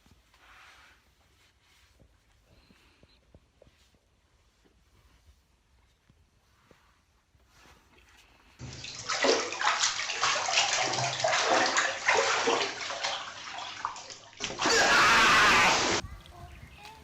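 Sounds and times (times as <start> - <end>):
water splashing and sloshing: 8.6 - 16.0
rushing noise burst: 14.7 - 16.0.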